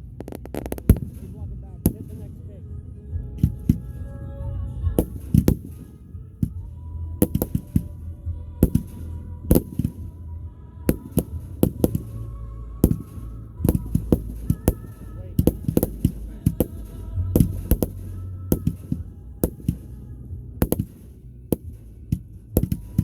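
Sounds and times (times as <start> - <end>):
fireworks bangs: 0.0 - 2.5, 4.9 - 8.0, 8.6 - 10.2, 10.9 - 20.0, 20.6 - 21.9
low rumble: 0.0 - 23.0.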